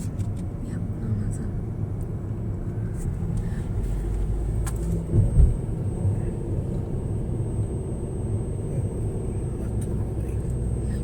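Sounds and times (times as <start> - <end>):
car road noise rumble: 0.0 - 11.0
low thumps: 5.0 - 5.8.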